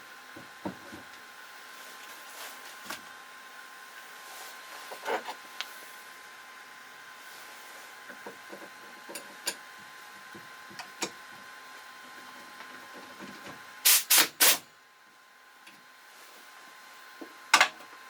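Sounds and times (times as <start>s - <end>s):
hissing spray bursts: 13.8s - 14.6s.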